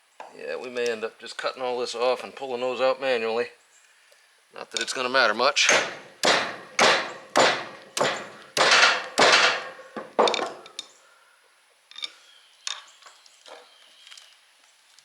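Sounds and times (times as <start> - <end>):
hammer blows on steel: 5.6 - 10.0.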